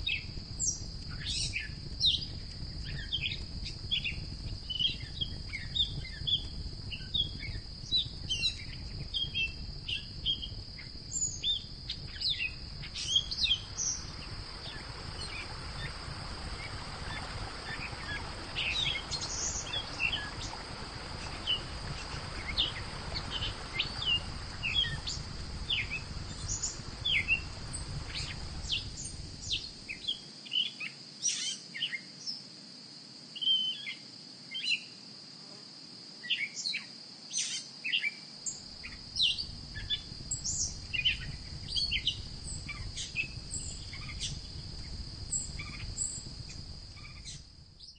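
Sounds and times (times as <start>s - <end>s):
soft hiss: 0.0s - 47.9s
birds chirping: 11.2s - 30.2s.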